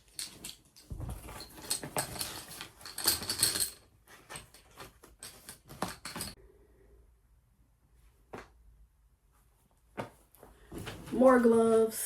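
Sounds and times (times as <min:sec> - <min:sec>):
rummaging through tool bag: 0:00.0 - 0:06.4.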